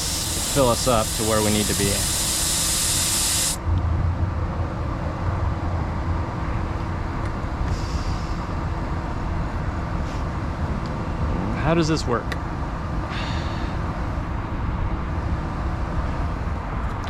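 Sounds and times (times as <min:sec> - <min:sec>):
air hissing out of tire valve: 0:00.0 - 0:03.6, 0:07.7 - 0:08.6, 0:13.1 - 0:13.9
steady low rumble: 0:03.5 - 0:17.0.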